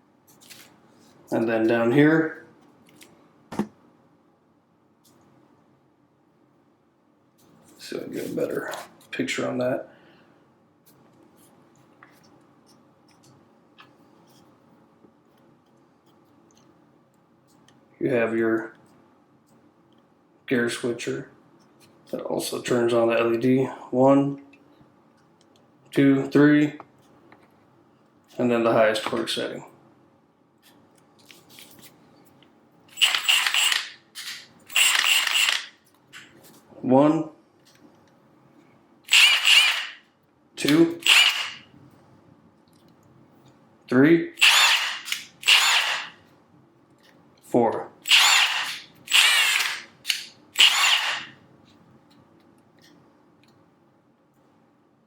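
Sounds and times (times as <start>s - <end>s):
impact wrench whine: 32.9s - 34.0s, 34.7s - 35.7s, 39.1s - 40.0s, 41.0s - 41.7s, 44.4s - 46.2s, 48.0s - 51.4s.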